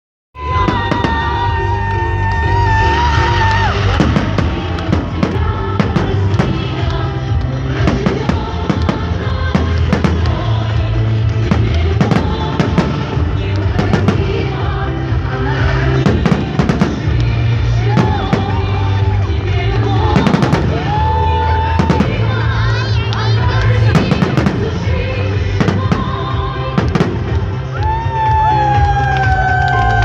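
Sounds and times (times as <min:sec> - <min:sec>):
fireworks bangs and crackles: 0:00.4 - 0:02.4, 0:03.0 - 0:30.0
loud music with bass: 0:00.4 - 0:30.0.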